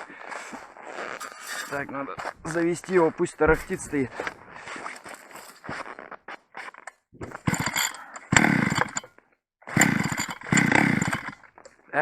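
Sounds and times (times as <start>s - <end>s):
small petrol engine firing in bursts: 7.2s - 9.1s, 9.7s - 11.4s.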